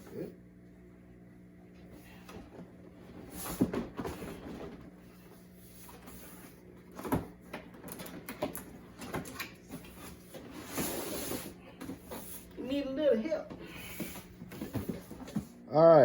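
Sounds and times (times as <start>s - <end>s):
cardboard sliding scrape: 10.2s - 12.5s.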